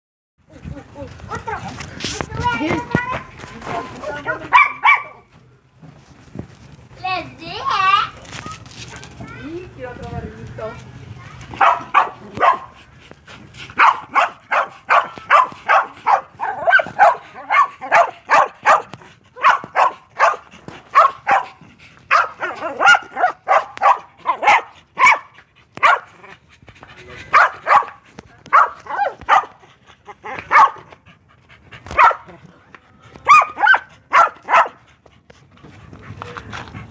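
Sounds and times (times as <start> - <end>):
dog barking: 4.4 - 5.2, 11.5 - 12.8, 13.8 - 26.2, 27.3 - 29.6, 30.3 - 30.9, 31.9 - 32.3, 33.3 - 34.8.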